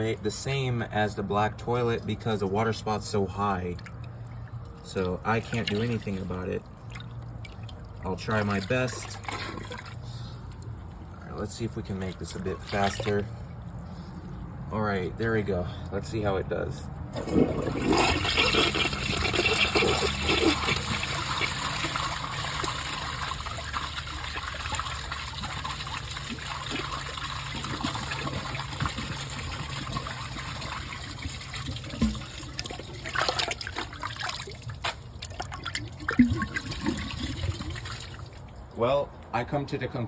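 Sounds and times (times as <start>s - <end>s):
toilet flushing: 17.1s - 34.7s, 35.4s - 38.4s.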